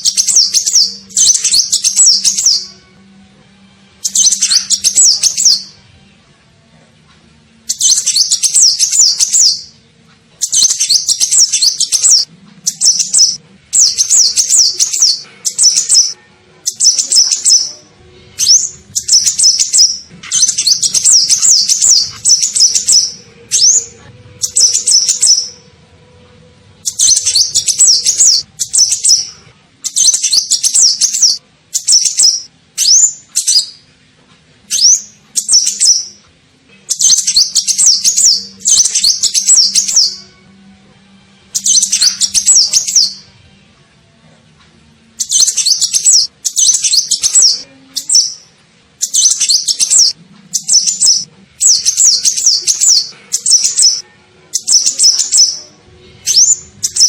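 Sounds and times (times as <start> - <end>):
bird twittering song: 0.0 - 2.7, 4.0 - 5.8, 7.7 - 9.8, 10.4 - 17.8, 18.4 - 25.6, 26.8 - 33.8, 34.7 - 36.2, 36.9 - 40.2, 41.6 - 43.3, 45.2 - 57.0.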